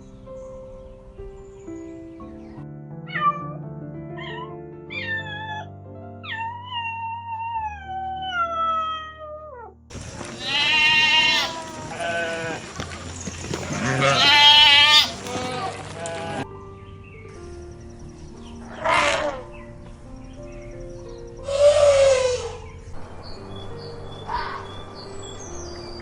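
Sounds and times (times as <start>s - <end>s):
soft piano music: 0.0s - 26.0s
animal calls falling in pitch: 9.9s - 16.4s.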